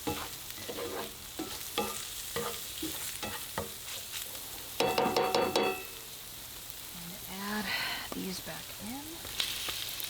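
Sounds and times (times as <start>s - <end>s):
utensil scraping a pan: 0.0s - 4.2s
sausage sizzling in a pan: 0.0s - 10.0s.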